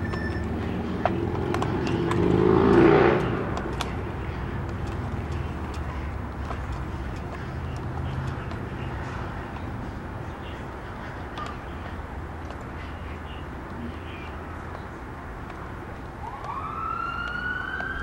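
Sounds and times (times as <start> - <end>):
car driving past: 1.2 - 3.7.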